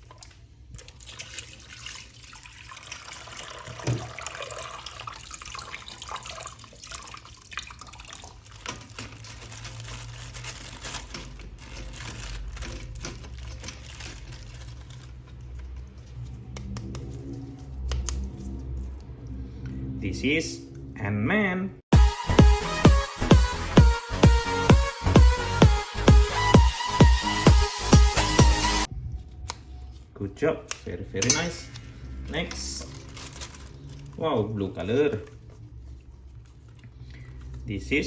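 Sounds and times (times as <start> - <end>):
tap water running: 0.0 - 9.0.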